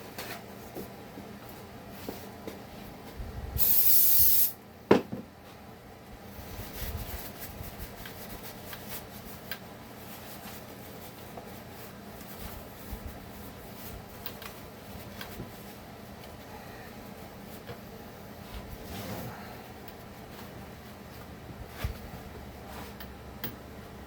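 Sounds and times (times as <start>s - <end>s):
aerosol spray hissing: 3.6s - 4.6s
rubbing and handling sounds: 6.4s - 16.4s.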